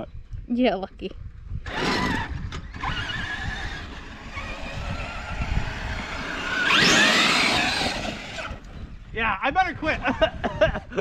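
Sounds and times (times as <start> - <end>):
small vehicle engine revving: 1.6 - 8.8.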